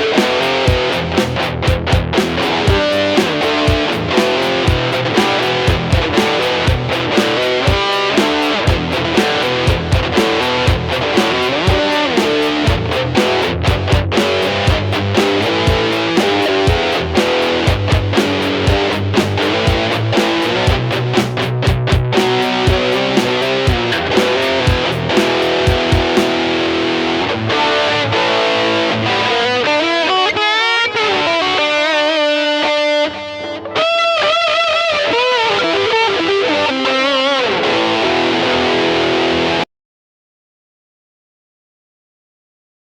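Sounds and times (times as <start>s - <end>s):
drum rhythm: 0.0s - 26.5s
distorted electric guitar: 0.0s - 39.6s.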